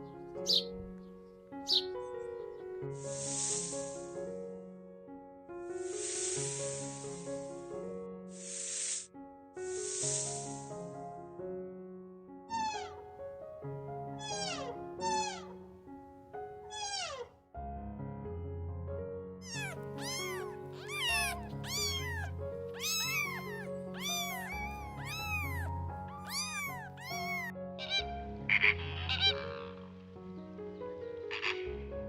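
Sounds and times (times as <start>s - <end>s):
high arching animal calls: 1.7s - 2.0s, 12.5s - 13.1s, 14.1s - 15.6s, 16.7s - 17.3s, 19.5s - 29.9s
short falling cries: 19.5s - 27.5s.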